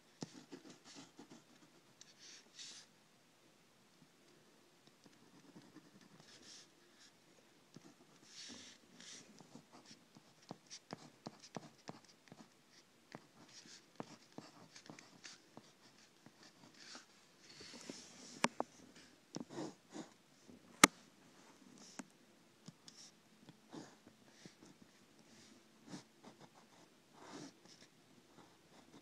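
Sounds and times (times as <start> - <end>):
drawing tool scratching on paper: 7.8 - 12.5, 13.2 - 18.0, 27.2 - 27.9.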